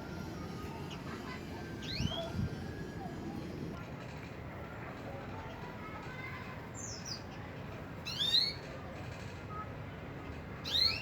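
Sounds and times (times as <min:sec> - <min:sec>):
steady background noise: 0:00.0 - 0:11.0
canary chirping: 0:10.6 - 0:11.0.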